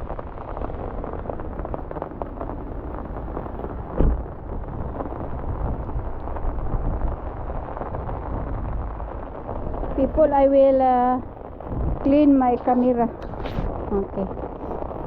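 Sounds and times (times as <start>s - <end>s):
heavy rain: 0.0s - 15.0s
wind buffeting microphone: 0.0s - 15.0s
loud bump: 4.0s - 4.3s.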